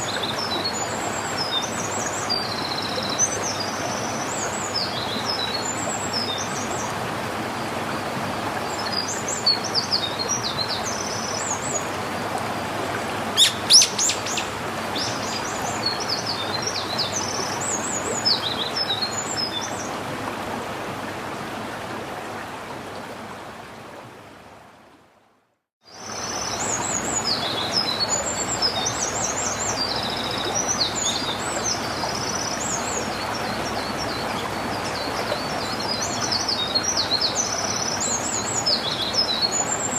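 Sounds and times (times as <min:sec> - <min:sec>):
steady outdoor hiss: 0:00.0 - 0:39.9
songbirds chirping: 0:13.2 - 0:19.8.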